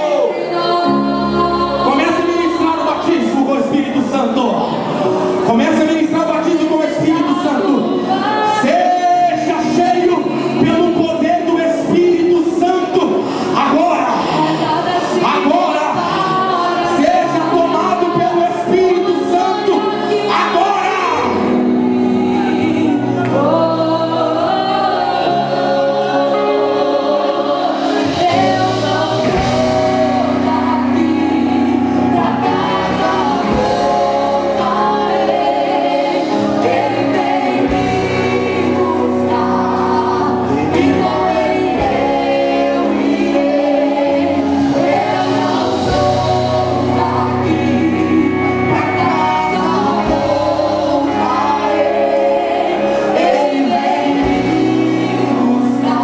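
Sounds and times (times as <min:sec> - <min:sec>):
choir singing gospel: 0:00.0 - 0:56.0
sustained keyboard chords: 0:00.0 - 0:56.0
bass line: 0:27.8 - 0:56.0.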